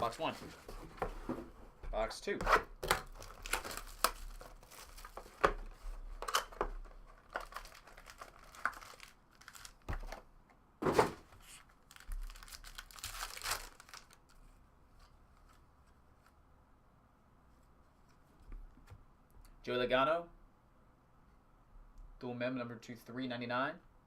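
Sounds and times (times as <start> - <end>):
plastic wrapping crinkling and tearing: 2.8 - 5.6, 6.2 - 10.2, 11.4 - 14.6.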